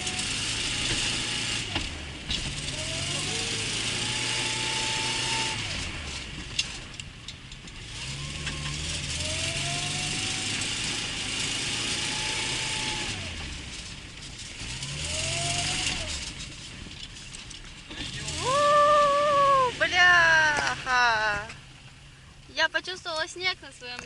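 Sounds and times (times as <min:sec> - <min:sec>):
car engine revving hard: 0:00.0 - 0:06.8, 0:07.8 - 0:16.5, 0:17.9 - 0:20.8.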